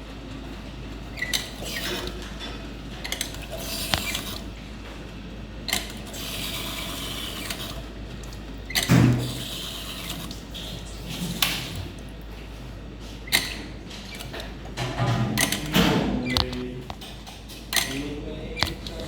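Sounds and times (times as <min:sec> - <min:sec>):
lever squeaking: 0:03.6 - 0:04.4
espresso machine lever clicking: 0:03.8 - 0:04.3.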